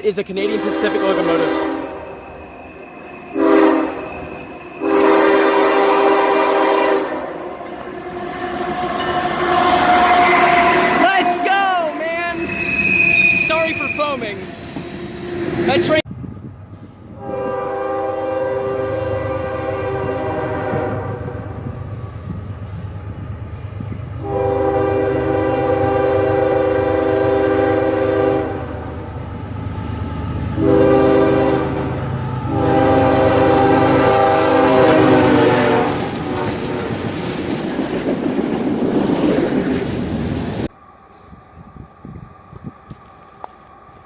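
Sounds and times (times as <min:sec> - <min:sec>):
freight train rumble and wheel clatter: 0:00.0 - 0:44.0
locomotive air horn: 0:00.4 - 0:02.0, 0:03.3 - 0:14.3, 0:17.2 - 0:21.6, 0:24.2 - 0:28.7, 0:30.6 - 0:36.8.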